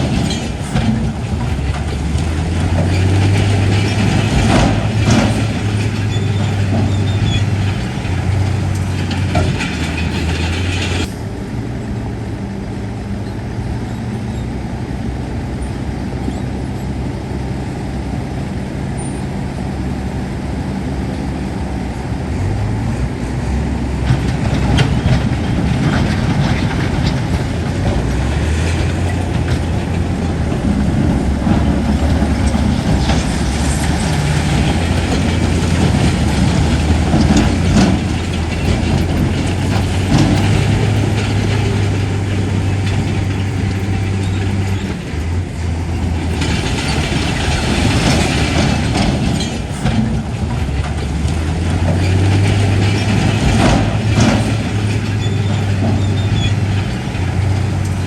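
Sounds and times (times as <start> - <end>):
knocks and clanks: 0.0 - 11.2, 24.0 - 58.0
heavy diesel machinery running: 0.0 - 58.0.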